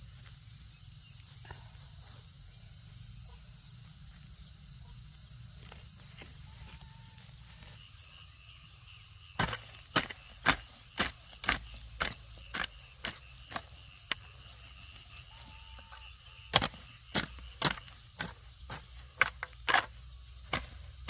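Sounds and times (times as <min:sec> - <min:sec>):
insects shrilling: 0:00.0 - 0:21.0
hand tool striking wood: 0:09.4 - 0:14.2, 0:16.5 - 0:20.8.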